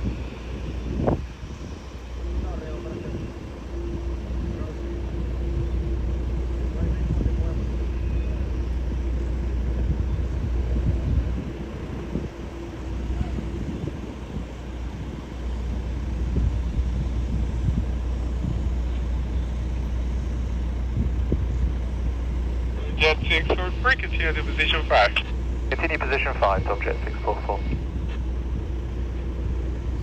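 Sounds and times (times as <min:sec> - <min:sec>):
wind buffeting microphone: 0:00.0 - 0:22.9
jet engines rumbling: 0:00.0 - 0:30.0.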